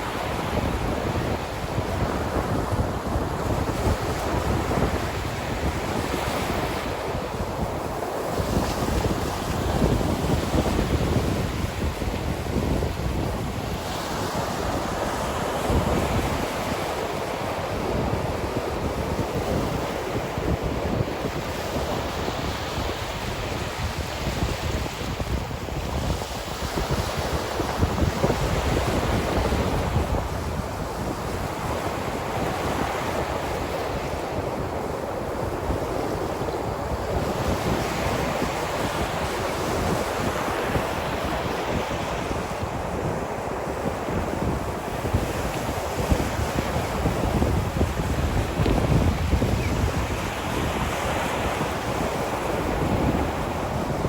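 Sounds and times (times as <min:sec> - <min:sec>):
ocean surf washing ashore: 0:00.0 - 0:54.0
wind: 0:00.0 - 0:54.0.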